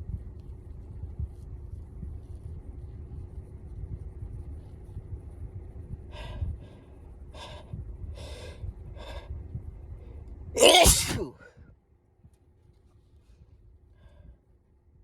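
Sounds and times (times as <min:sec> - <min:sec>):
loud sneeze: 0:10.6 - 0:11.4.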